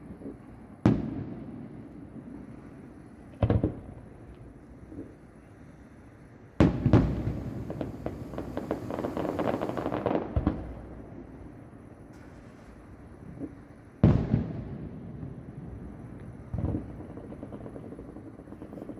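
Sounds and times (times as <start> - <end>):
distant firework bangs: 6.6 - 11.3
firework crackling: 6.6 - 11.6, 15.7 - 18.9.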